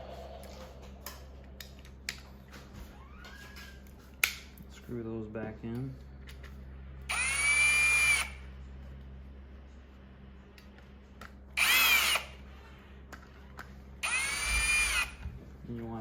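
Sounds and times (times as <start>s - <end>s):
power drill motor whine: 7.1s - 8.5s, 11.6s - 12.7s, 14.0s - 15.4s.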